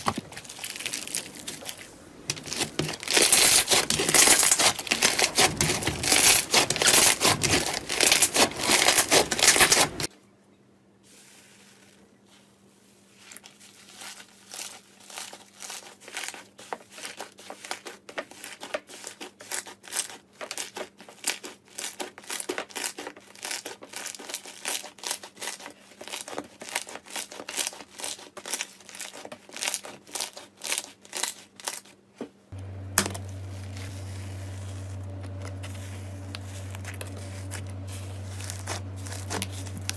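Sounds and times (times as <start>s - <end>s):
slime crackling and popping: 0.0s - 10.1s
steady low hum: 32.5s - 39.9s.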